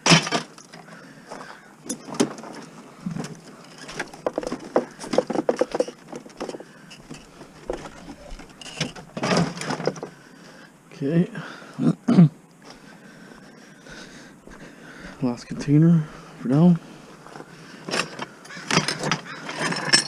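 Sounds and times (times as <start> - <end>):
scrap items clattering: 0.0 - 10.2, 17.3 - 20.0.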